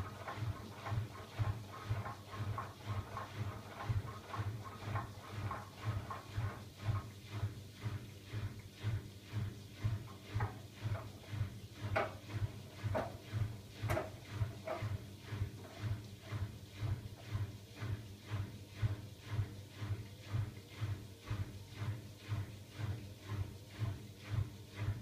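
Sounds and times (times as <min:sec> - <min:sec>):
washing machine tumbling: 0:00.0 - 0:25.0.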